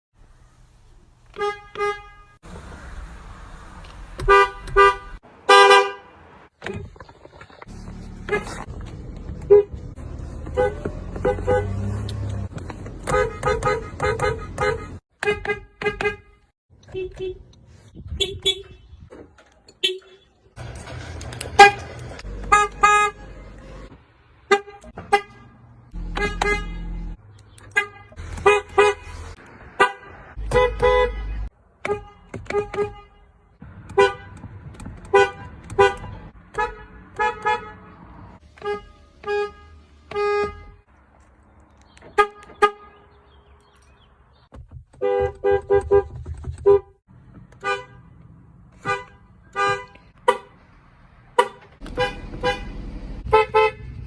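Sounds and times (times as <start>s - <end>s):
vehicle horn honking: 1.4s - 2.4s, 4.2s - 6.1s, 10.4s - 12.3s, 13.1s - 17.4s, 21.5s - 23.9s, 24.5s - 33.3s, 35.1s - 38.0s, 38.6s - 40.8s, 42.1s - 43.1s, 47.6s - 48.0s, 48.8s - 50.6s, 51.4s - 54.0s.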